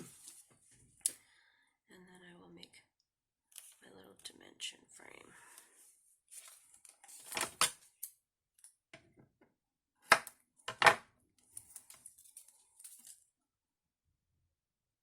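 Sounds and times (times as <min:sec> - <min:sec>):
paper and card rustling: 0:06.3 - 0:07.7.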